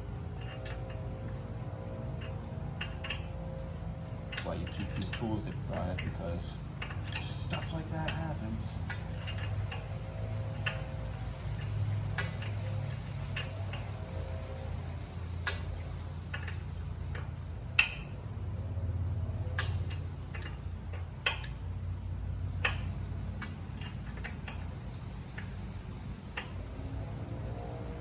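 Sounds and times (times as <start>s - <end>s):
wrench clicking on metal: 0.4s - 1.0s, 2.2s - 3.3s, 4.3s - 6.2s, 6.8s - 14.8s, 15.4s - 18.2s, 19.6s - 21.6s, 22.5s - 26.7s
metal clank: 4.3s - 14.6s, 19.6s - 21.7s, 22.6s - 24.7s.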